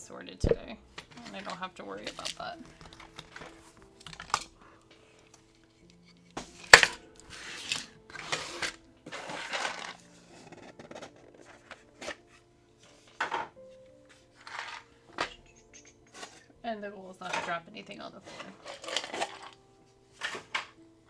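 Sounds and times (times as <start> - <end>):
plastic blocks clicking and rattling: 1.0 - 4.6, 6.5 - 12.2, 14.4 - 16.4, 18.2 - 19.6, 20.2 - 20.8.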